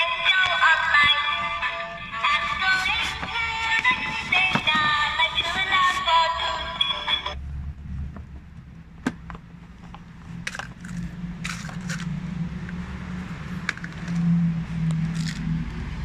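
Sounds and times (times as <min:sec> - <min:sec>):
low steady hum: 0:00.0 - 0:16.0
plastic toy parts clicking: 0:10.5 - 0:12.1, 0:13.6 - 0:14.2, 0:15.0 - 0:15.5.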